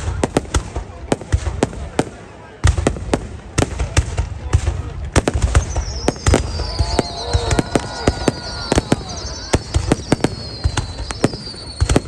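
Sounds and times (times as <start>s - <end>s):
firework bangs: 0.0s - 12.0s
firework whistles sliding down: 5.5s - 12.0s.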